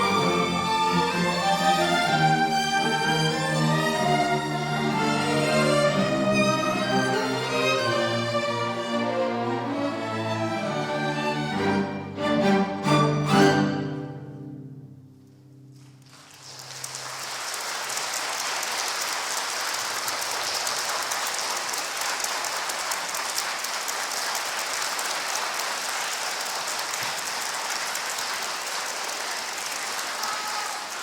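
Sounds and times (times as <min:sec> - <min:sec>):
audience applauding: 0:00.0 - 0:08.0, 0:15.8 - 0:31.0
string orchestra chord: 0:00.0 - 0:15.0.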